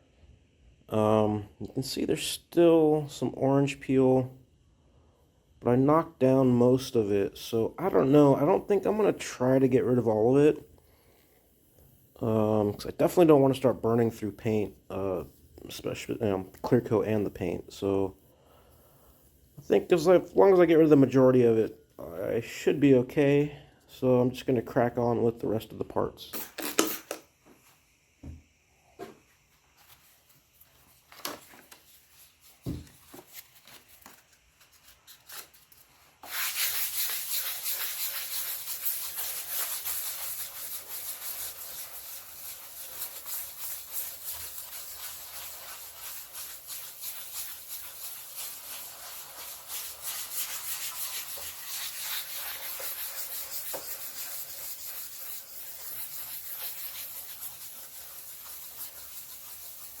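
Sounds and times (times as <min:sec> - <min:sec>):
sandpaper rubbing: 0:31.9 - 1:00.0.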